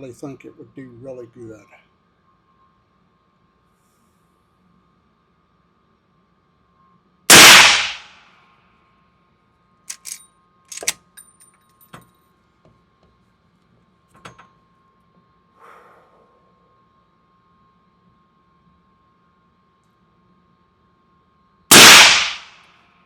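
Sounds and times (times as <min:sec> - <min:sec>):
suppressed rifle shot: 0:07.3 - 0:08.1, 0:21.7 - 0:22.5
rifle lever action clicking: 0:09.9 - 0:11.1.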